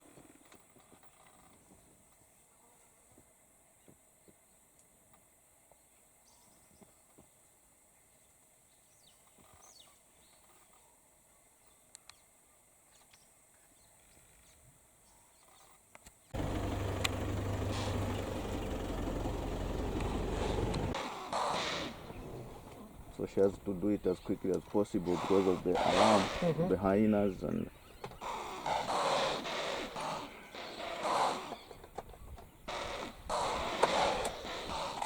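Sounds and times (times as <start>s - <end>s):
faint clicks: 15.9s - 18.3s
low engine rumble: 16.4s - 21.0s.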